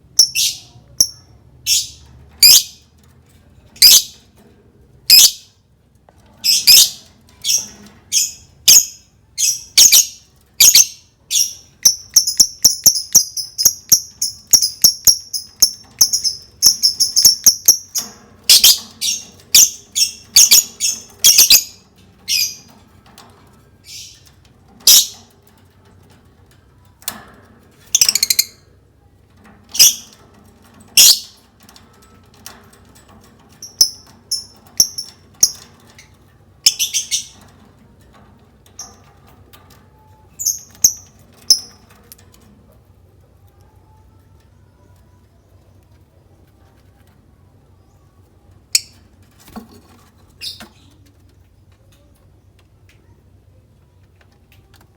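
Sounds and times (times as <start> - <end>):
lovebird chirping: 0.2 - 2.8, 6.5 - 22.7, 27.9 - 28.6.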